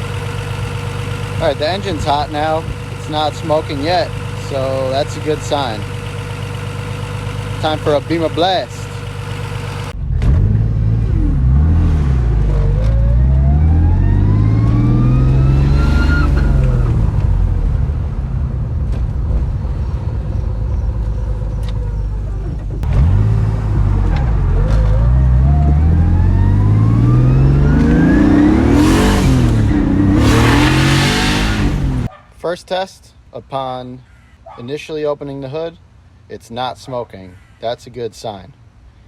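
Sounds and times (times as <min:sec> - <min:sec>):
car engine accelerating hard: 0:09.8 - 0:32.1.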